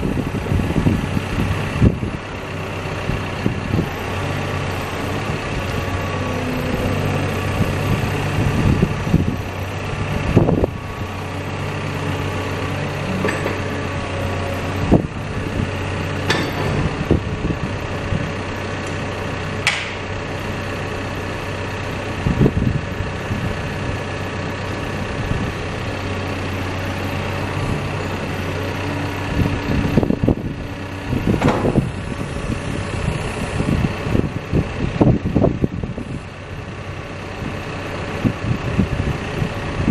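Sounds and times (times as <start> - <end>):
diesel engine running: 0.0 - 39.9
sharp knocks and clunks: 16.2 - 17.0, 31.3 - 31.9.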